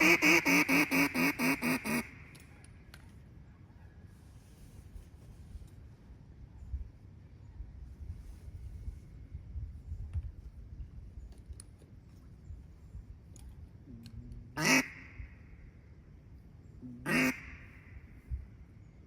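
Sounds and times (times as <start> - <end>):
duck quacks with echo: 0.0 - 2.2, 14.6 - 15.2, 17.0 - 17.9.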